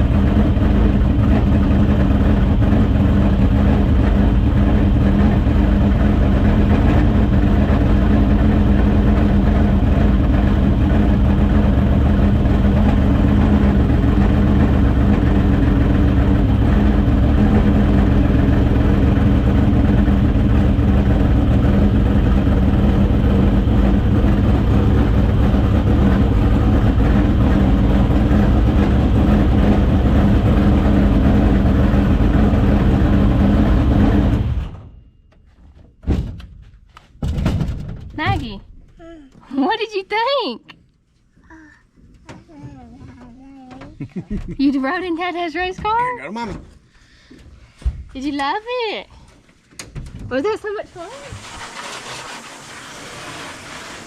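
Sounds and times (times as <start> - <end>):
race car engine running: 0.0 - 35.0, 50.9 - 54.0.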